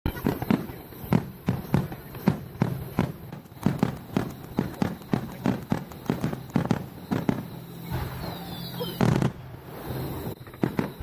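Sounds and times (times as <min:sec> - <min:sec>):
fireworks bangs and thuds: 0:00.1 - 0:11.0.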